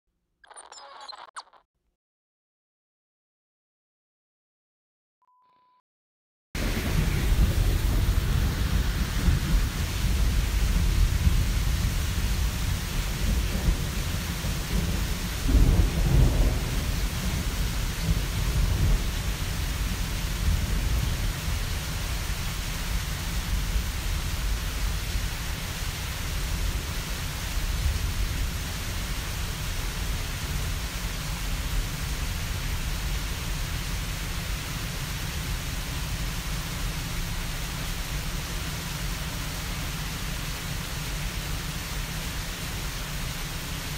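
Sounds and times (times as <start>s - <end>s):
low rolling thunder: 6.6s - 24.9s
steady rain: 6.6s - 43.9s.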